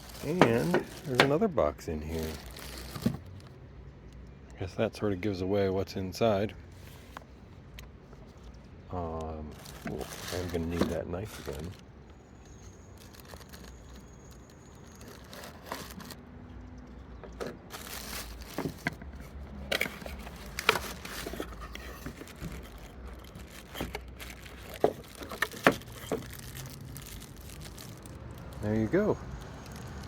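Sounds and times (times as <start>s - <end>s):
packing torn and rustled: 0.0s - 1.5s, 2.1s - 3.5s, 9.2s - 16.2s, 17.4s - 30.0s.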